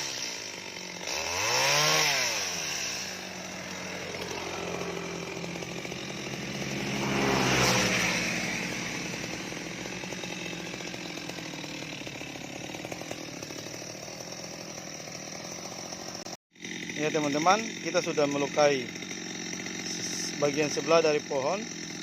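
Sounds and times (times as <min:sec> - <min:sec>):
chainsaw cutting wood: 0:00.0 - 0:22.0.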